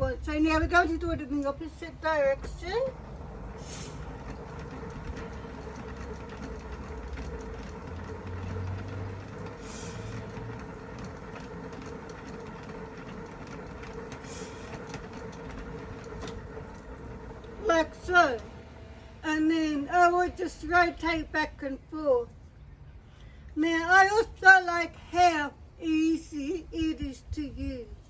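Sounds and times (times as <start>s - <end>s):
hand-cranked washing machine whirring: 0.0s - 21.8s.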